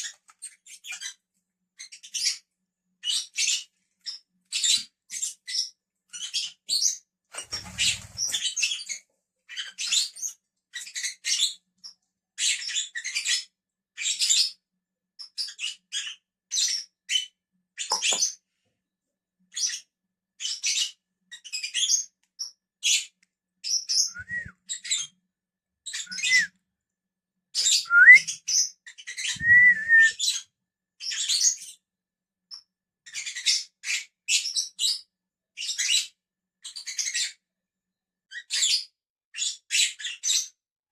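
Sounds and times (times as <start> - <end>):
birds chirping: 23.6 - 25.1, 25.9 - 26.5, 27.6 - 28.4, 29.1 - 30.3
rising whistled notes: 24.1 - 24.5, 26.1 - 26.5, 27.9 - 28.2, 29.4 - 30.2.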